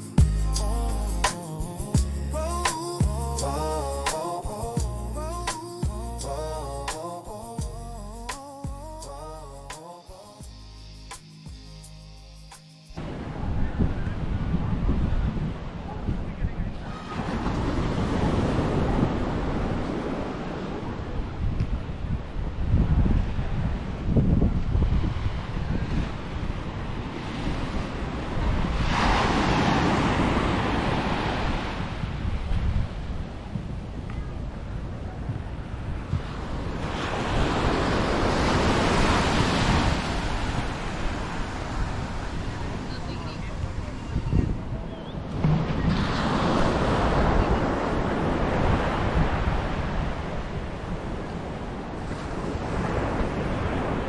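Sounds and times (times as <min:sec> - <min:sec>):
wind buffeting microphone: 0:13.0 - 0:54.0
sea waves breaking: 0:25.1 - 0:33.4, 0:36.0 - 0:44.0, 0:45.2 - 0:54.0.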